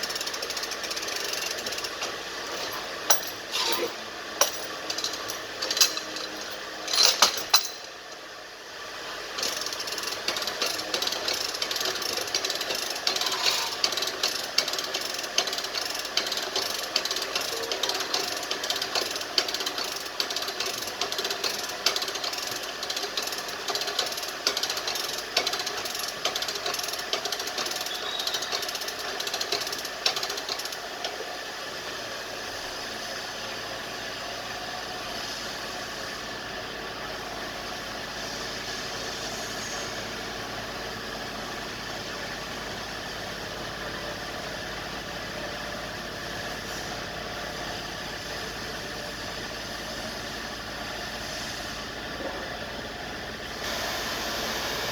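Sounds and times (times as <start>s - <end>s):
mechanical rattling and knocking: 0.0s - 8.0s, 9.4s - 31.2s
steady machine hum: 52.7s - 54.9s.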